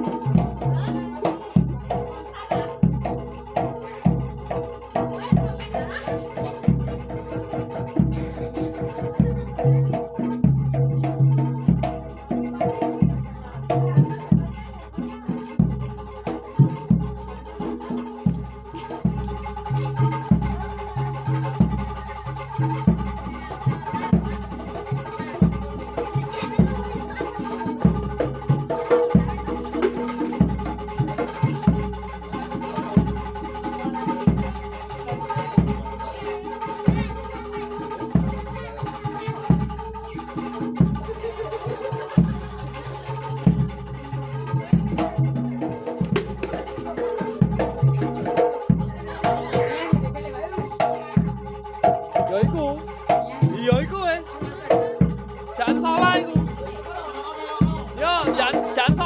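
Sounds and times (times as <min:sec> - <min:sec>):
bass drum beating: 0:00.0 - 0:59.0
small drum strokes: 0:00.0 - 0:59.0.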